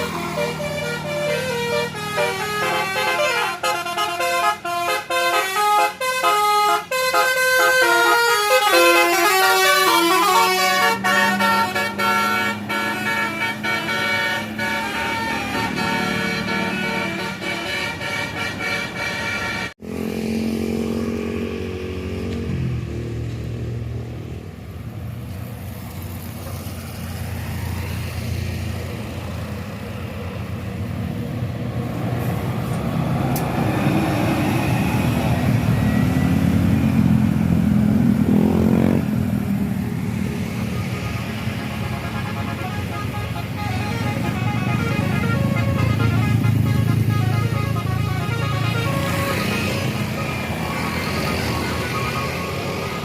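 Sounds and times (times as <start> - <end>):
vehicles passing: 0.0 - 53.0.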